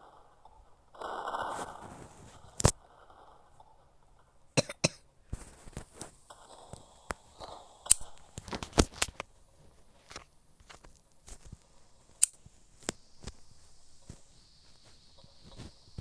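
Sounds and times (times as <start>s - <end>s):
person coughing: 4.6s - 5.0s.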